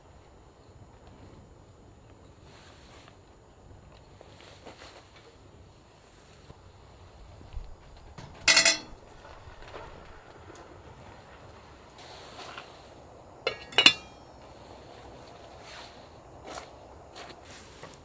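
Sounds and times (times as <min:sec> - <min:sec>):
tableware clinking: 0:08.5 - 0:08.9, 0:13.5 - 0:14.2.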